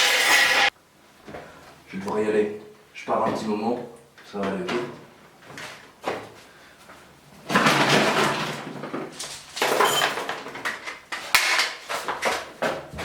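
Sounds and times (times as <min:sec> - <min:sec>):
objects clattering and knocking: 0:07.4 - 0:13.0.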